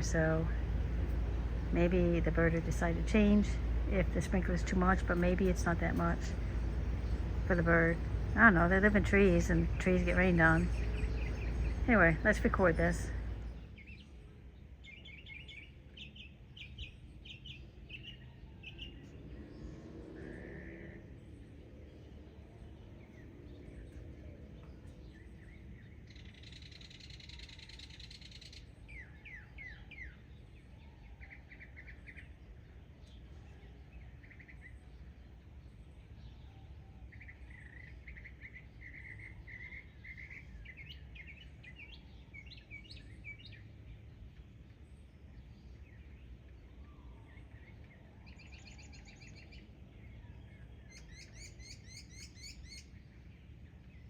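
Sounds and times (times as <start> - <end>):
faint low rumble: 0.0 - 54.0
small birds chirping and trilling: 0.0 - 54.0.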